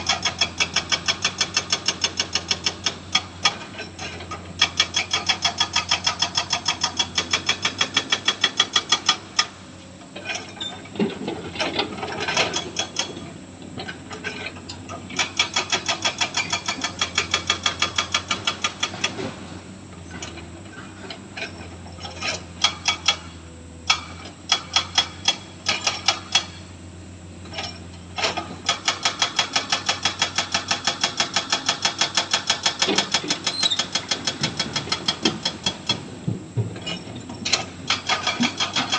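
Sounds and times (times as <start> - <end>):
hydraulic breaker hammering: 36.7 - 38.9.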